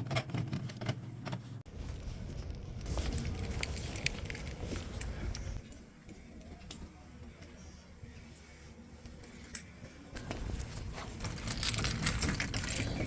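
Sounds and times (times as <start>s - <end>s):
keys jingling and clicking: 3.0s - 6.3s, 10.5s - 13.0s.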